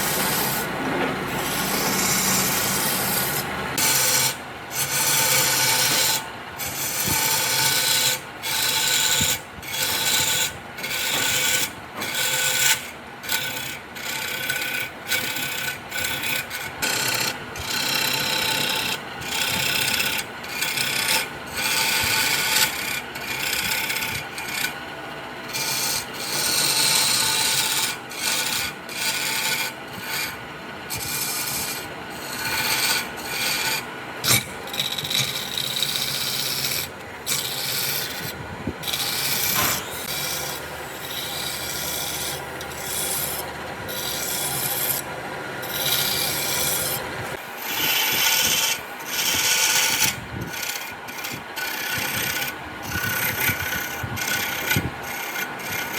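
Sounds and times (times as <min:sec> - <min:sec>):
sanding rubbing on wood: 0:00.0 - 0:12.6, 0:45.6 - 0:55.9.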